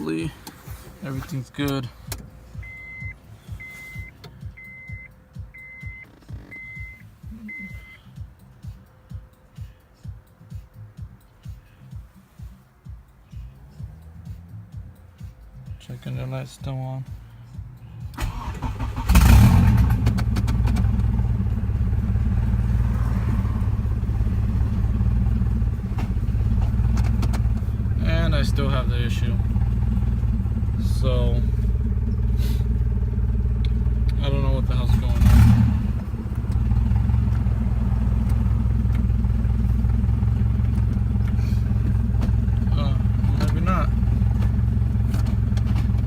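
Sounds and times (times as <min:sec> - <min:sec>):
car engine idling: 0:00.0 - 0:46.0
engine starter cranking: 0:18.1 - 0:21.2.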